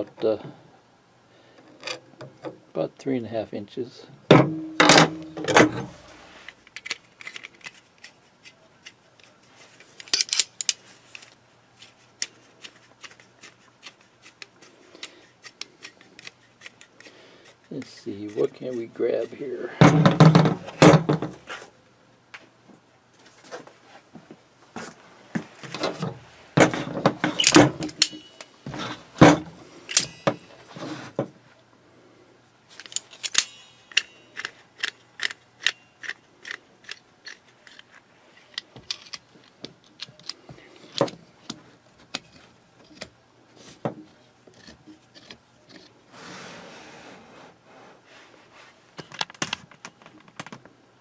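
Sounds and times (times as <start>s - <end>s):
metal pliers clicking and clanking: 6.6s - 10.8s, 25.7s - 30.6s, 32.8s - 41.2s.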